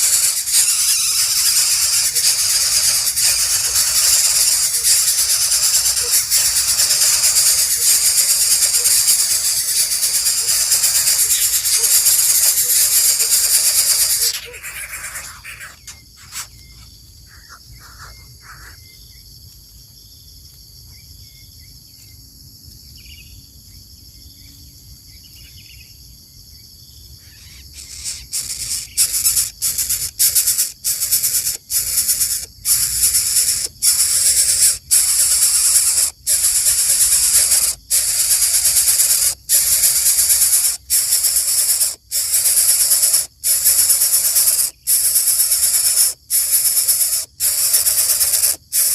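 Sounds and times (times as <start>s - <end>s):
high-pitched outdoor drone: 0.0s - 16.6s
faint chirps: 0.0s - 19.3s, 27.0s - 48.9s.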